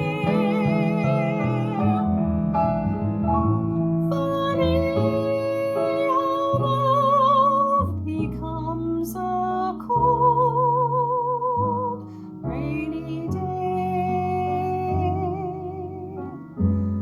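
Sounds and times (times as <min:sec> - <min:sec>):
woman singing a slow ballad: 0:00.0 - 0:02.1, 0:04.1 - 0:16.6
piano accompaniment: 0:00.0 - 0:17.0.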